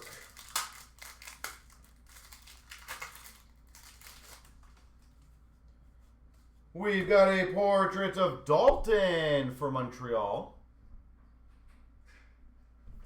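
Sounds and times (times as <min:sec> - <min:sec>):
cards crinkling and rustling: 0:00.0 - 0:05.7.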